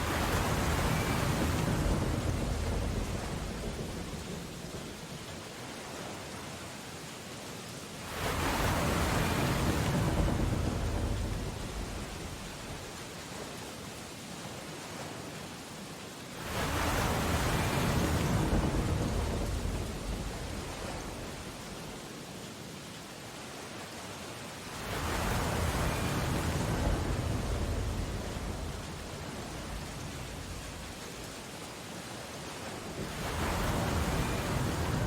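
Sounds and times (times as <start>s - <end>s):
rain on window glass: 0.0s - 6.1s
storm waves crashing: 0.0s - 6.8s, 8.0s - 15.3s, 16.3s - 22.3s, 23.5s - 35.0s.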